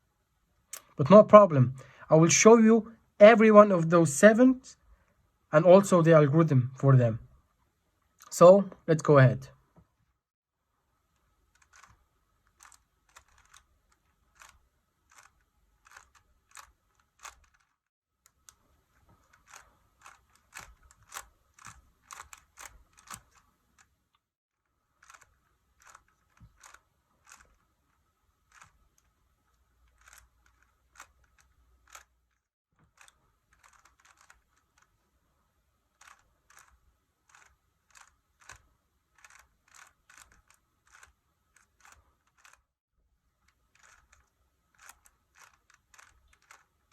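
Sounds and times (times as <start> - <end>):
puzzle cube layers clicking: 11.1 - 24.2, 24.8 - 35.2, 35.8 - 42.7, 43.4 - 46.9.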